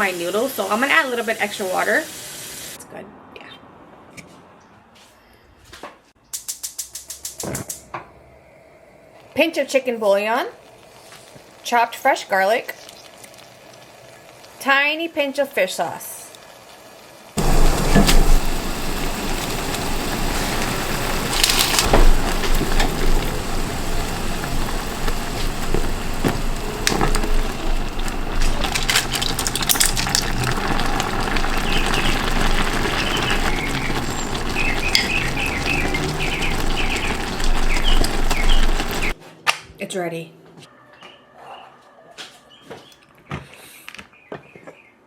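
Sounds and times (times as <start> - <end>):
utensil clicking against pot: 6.4 - 7.8
broth sizzling and bubbling: 10.6 - 11.7, 16.4 - 39.2.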